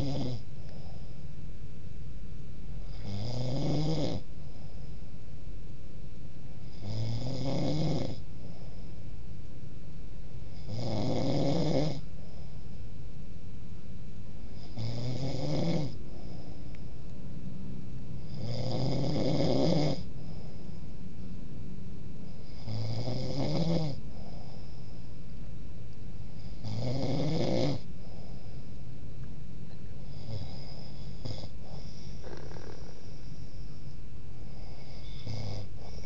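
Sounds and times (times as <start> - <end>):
man snoring: 0.0 - 1.0, 2.8 - 4.3, 6.6 - 8.6, 10.5 - 12.1, 14.5 - 16.7, 18.2 - 20.6, 22.2 - 24.8, 26.4 - 28.5, 30.0 - 33.5, 34.4 - 36.0
steady low hum: 0.0 - 36.0.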